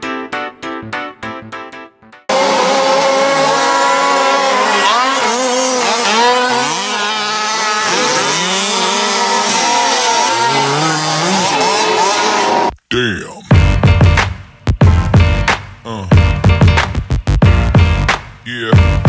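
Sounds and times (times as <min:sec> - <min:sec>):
rc car engines buzzing: 0:02.3 - 0:12.7.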